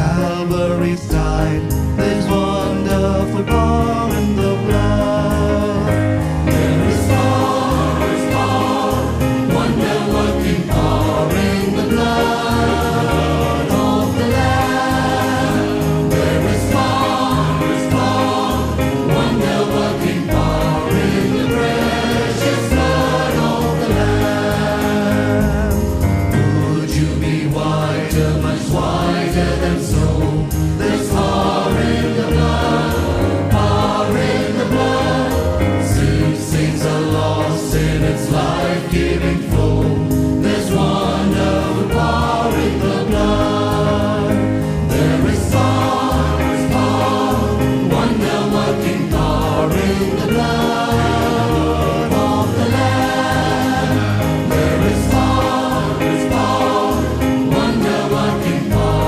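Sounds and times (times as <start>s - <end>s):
choir singing gospel: 0.0s - 59.0s
rhythmic bass line: 0.0s - 59.0s.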